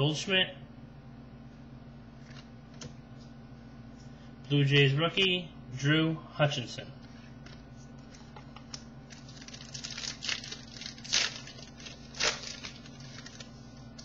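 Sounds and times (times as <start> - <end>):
cards clicking and rustling: 7.4 - 13.5.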